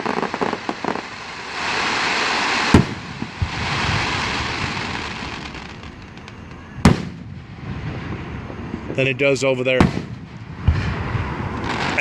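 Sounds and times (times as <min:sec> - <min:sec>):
hiss of burning fireworks: 0:00.0 - 0:12.0
firework shell bang: 0:02.8 - 0:04.0, 0:06.8 - 0:07.4, 0:09.8 - 0:12.0.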